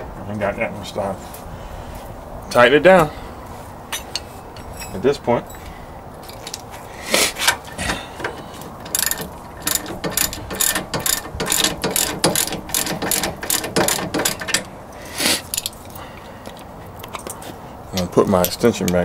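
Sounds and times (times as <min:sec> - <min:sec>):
ratchet wrench clicking: 0:08.7 - 0:14.7, 0:15.5 - 0:15.7.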